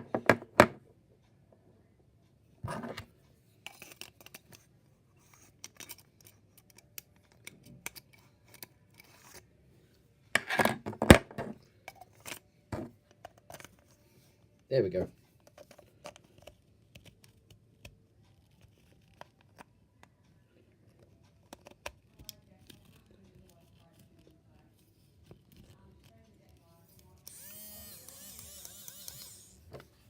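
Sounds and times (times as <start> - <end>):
small plastic clicks and scrapes: 2.7 - 9.4, 20.9 - 30.0.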